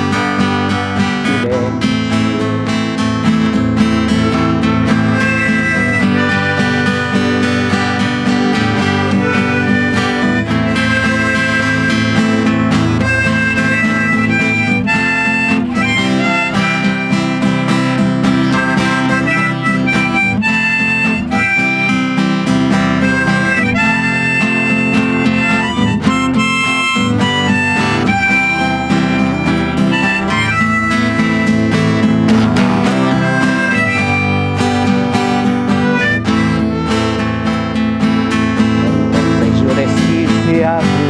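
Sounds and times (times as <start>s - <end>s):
harmonica melody: 0.0s - 41.0s
strummed acoustic guitar: 0.0s - 41.0s.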